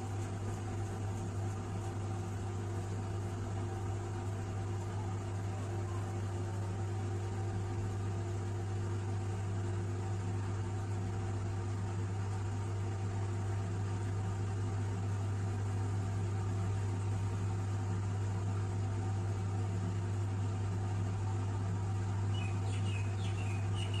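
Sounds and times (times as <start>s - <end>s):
washing machine humming: 0.0s - 24.0s.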